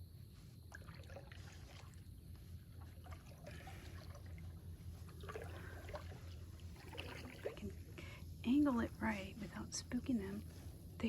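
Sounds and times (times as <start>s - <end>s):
steady low hum: 0.0s - 11.0s
small water splashes: 0.7s - 7.8s
water trickling and dripping: 0.7s - 8.2s.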